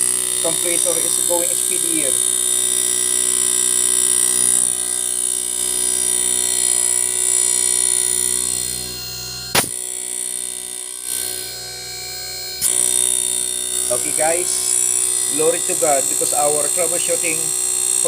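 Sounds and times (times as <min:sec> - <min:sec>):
air conditioner compressor humming: 0:00.0 - 0:18.0
high-pitched whine: 0:00.0 - 0:18.0
sharp click: 0:09.5 - 0:09.8.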